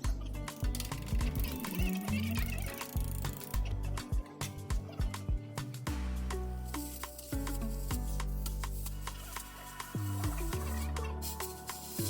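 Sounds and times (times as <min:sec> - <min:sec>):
music with bass line and light beat: 0:00.0 - 0:12.0.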